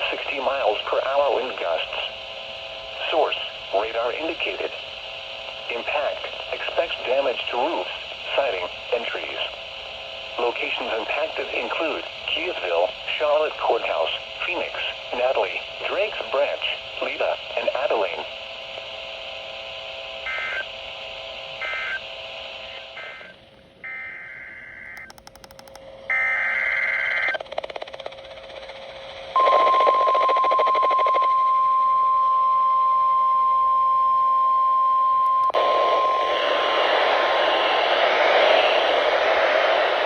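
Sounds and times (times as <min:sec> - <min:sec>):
loud radio static: 0:00.0 - 0:23.4, 0:29.3 - 0:31.3, 0:35.6 - 0:40.0
steady alarm tone: 0:20.2 - 0:20.7, 0:21.6 - 0:22.0, 0:29.4 - 0:40.0.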